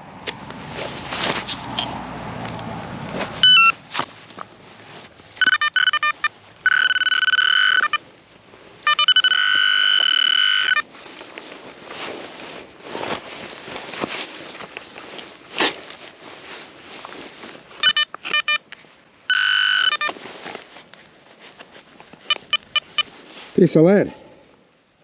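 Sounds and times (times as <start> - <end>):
metal detector beeping: 3.4 - 3.8, 5.4 - 8.0, 8.8 - 10.9, 17.8 - 18.7, 19.3 - 20.2, 22.2 - 23.1.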